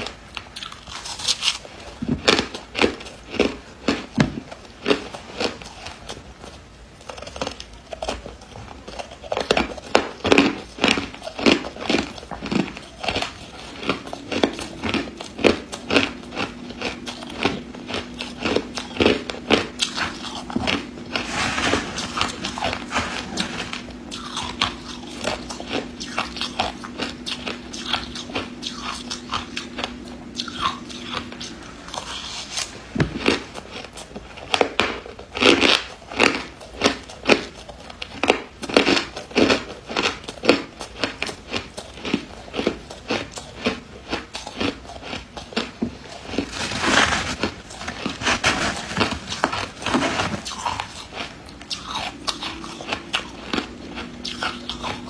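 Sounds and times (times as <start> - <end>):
faint steady hum: 0.0 - 55.0.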